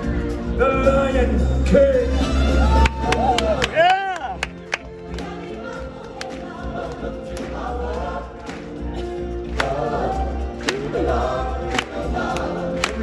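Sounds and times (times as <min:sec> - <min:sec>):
choir singing over music: 0:04.4 - 0:13.0.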